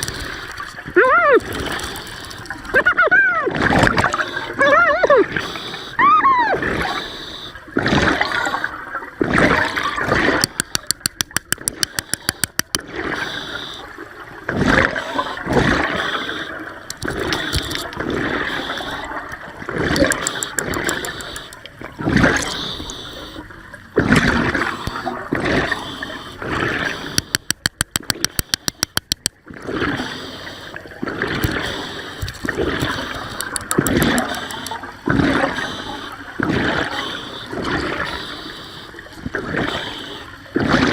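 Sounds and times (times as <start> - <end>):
water swirling and gurgling: 0.0 - 40.9
rapid even clicking: 10.4 - 12.8, 19.9 - 21.7, 27.2 - 29.4, 33.2 - 34.8.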